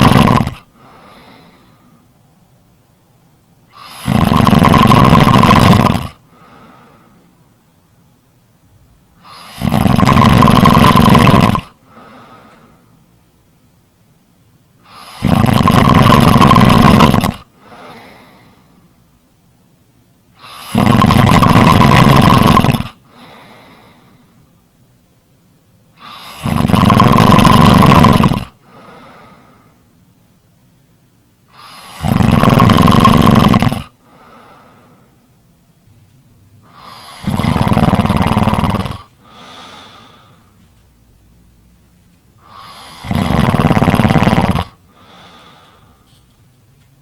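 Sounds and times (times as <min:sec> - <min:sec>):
loud snoring: 0:00.0 - 0:01.0, 0:03.7 - 0:06.2, 0:09.2 - 0:11.9, 0:14.8 - 0:18.4, 0:20.4 - 0:23.7, 0:26.0 - 0:29.3, 0:31.5 - 0:34.4, 0:36.6 - 0:40.3, 0:42.4 - 0:45.7.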